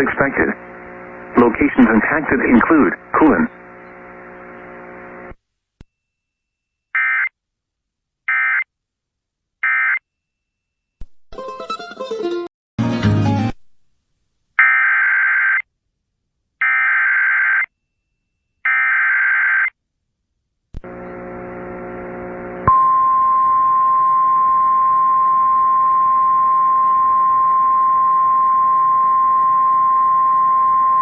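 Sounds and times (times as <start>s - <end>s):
hum with a click: 20.8s - 23.2s.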